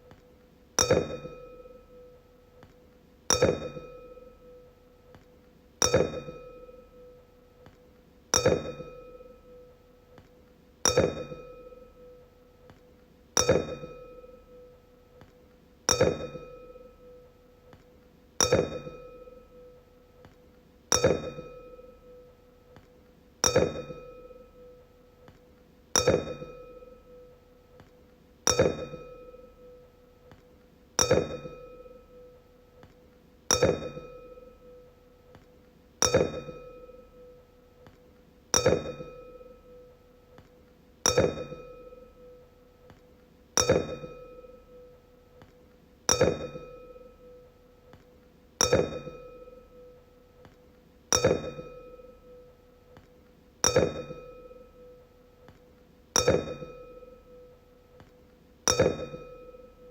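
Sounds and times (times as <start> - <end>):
wine glass tapped and ringing: 0.8 - 2.1, 3.3 - 4.7, 5.8 - 7.2, 8.4 - 9.7, 10.9 - 12.2, 13.4 - 14.7, 15.9 - 17.3, 18.4 - 19.8, 20.9 - 22.3, 23.4 - 24.8, 26.0 - 27.4, 28.5 - 29.8, 31.0 - 32.4, 33.5 - 34.9, 36.0 - 38.0, 38.6 - 40.0, 41.1 - 42.5, 43.6 - 45.0, 46.1 - 48.0, 48.6 - 52.5, 53.6 - 55.6, 56.2 - 57.6, 58.7 - 59.9.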